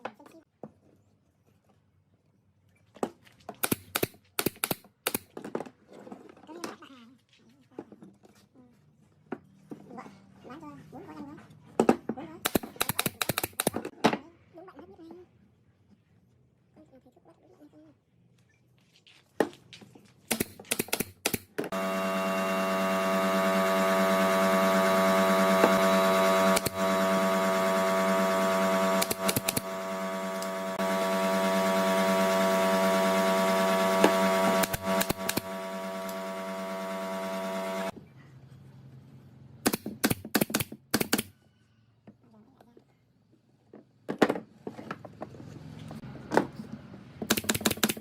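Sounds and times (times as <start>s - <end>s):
sharp clicks: 3.6s - 5.3s, 12.5s - 13.8s, 20.3s - 21.5s, 29.0s - 29.7s, 34.6s - 36.2s
electric motor whining: 21.7s - 37.9s.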